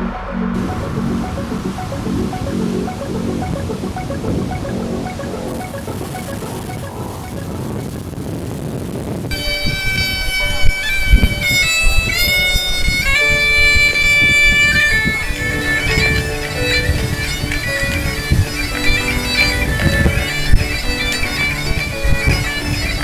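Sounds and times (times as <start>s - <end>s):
low rumbling noise: 0.0s - 22.8s
bagpipes playing a tune: 9.3s - 23.0s.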